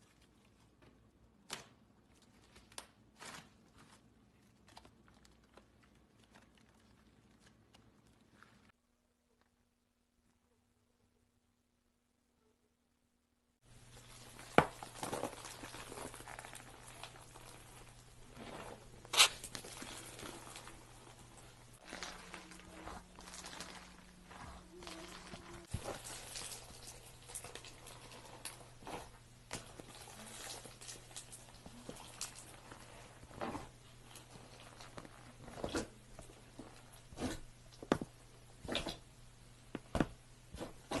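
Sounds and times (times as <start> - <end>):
slime crackling sticky patter: 14.0 - 37.4.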